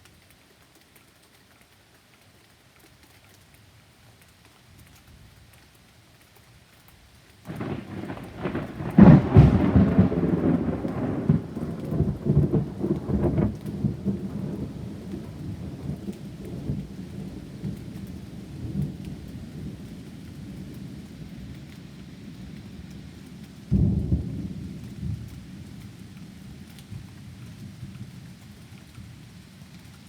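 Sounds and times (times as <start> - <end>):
thunderclap and rumble: 7.5 - 27.1.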